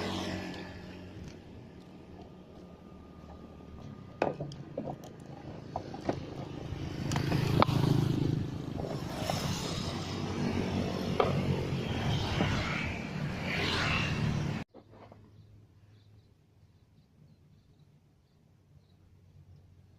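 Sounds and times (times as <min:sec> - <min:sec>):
sharp knocks and rattling clatter: 0:03.2 - 0:10.0.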